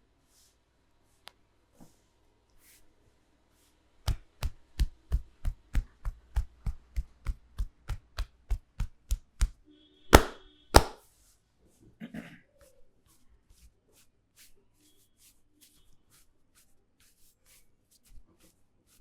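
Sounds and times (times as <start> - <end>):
hands chopping slaps on head: 4.1 - 9.6, 10.2 - 11.0.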